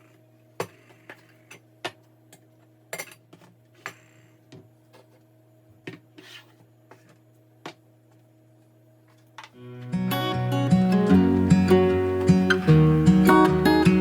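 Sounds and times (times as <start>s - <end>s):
faint steady hum: 0.0s - 14.0s.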